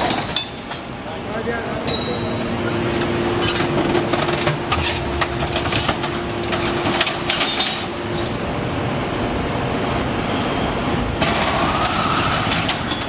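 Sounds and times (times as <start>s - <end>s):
steady hum: 0.0s - 11.7s
continuous machine noise: 0.0s - 13.0s
scrap metal clanking and cracking: 3.4s - 8.3s.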